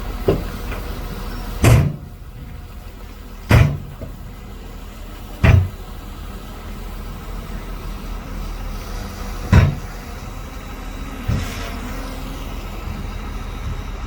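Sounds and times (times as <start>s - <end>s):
bulldozer running: 0.0s - 14.0s
heavy clunks: 0.2s - 2.8s, 3.4s - 4.4s, 5.4s - 5.9s, 9.4s - 10.1s, 11.2s - 11.8s.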